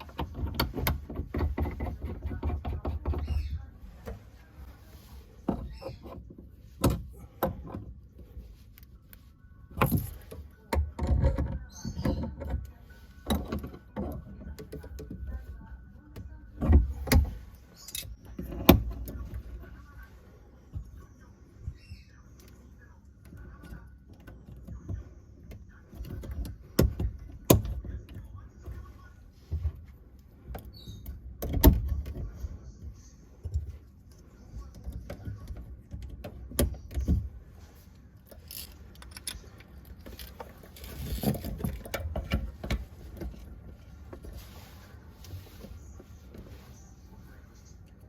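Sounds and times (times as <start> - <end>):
tools and metal fittings clinking: 38.2 - 43.5.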